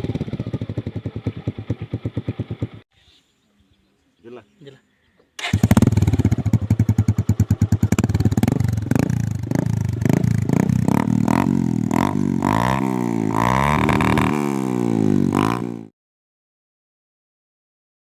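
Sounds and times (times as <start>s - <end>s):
motorcycle engine popping and revving: 0.0s - 2.8s, 5.4s - 15.9s.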